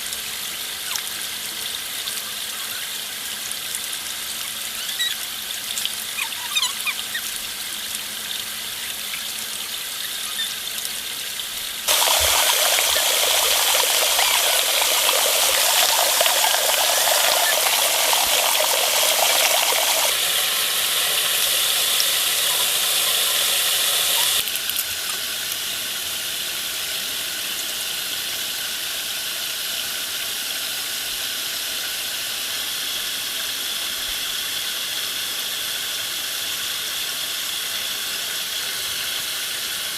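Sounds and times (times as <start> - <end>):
water hissing: 11.9 - 24.4.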